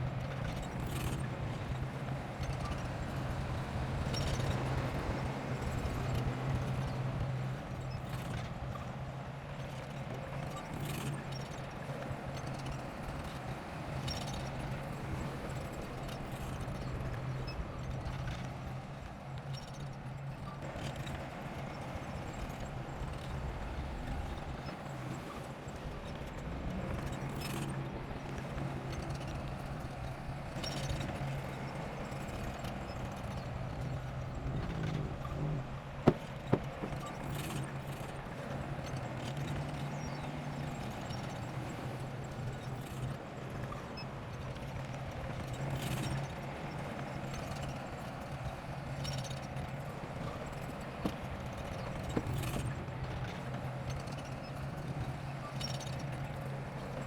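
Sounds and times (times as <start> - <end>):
heavy diesel engine clattering: 34.6 - 37.8.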